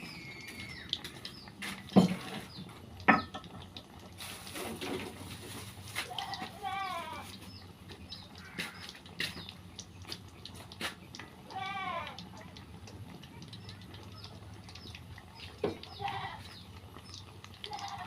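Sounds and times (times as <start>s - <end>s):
goat bleating: 6.0s - 7.3s, 11.4s - 12.2s, 15.8s - 16.5s, 17.7s - 18.0s.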